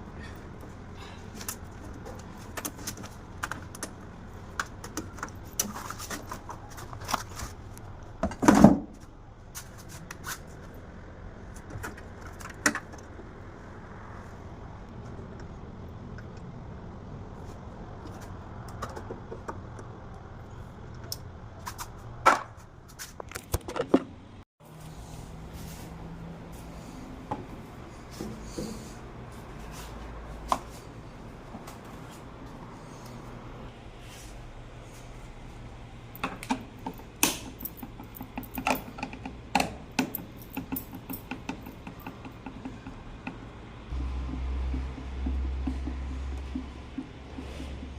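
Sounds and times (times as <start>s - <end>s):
sharp clicks and knocks: 36.2s - 47.9s.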